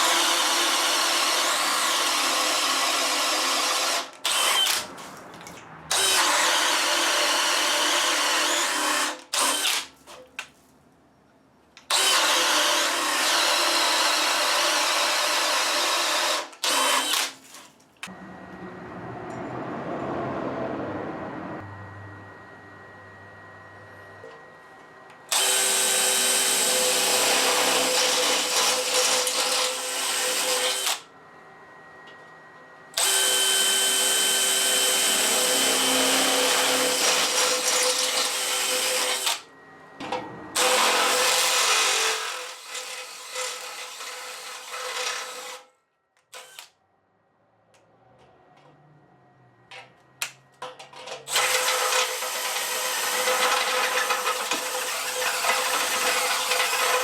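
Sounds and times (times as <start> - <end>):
hammer drill running under load: 0.0 - 4.9, 5.9 - 9.8, 11.9 - 17.3, 25.3 - 31.1, 32.9 - 39.5, 40.6 - 45.6, 46.3 - 46.7, 51.3 - 57.0.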